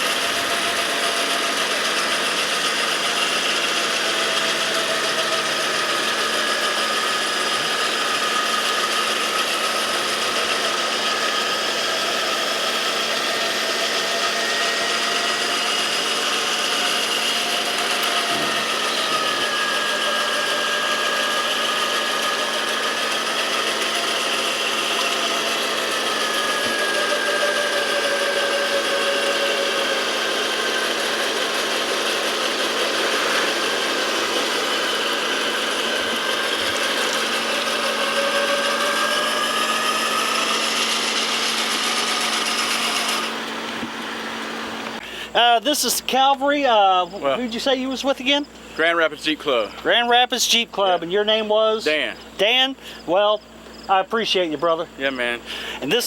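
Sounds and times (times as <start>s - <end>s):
electric winch motor whine: 0.0s - 56.0s.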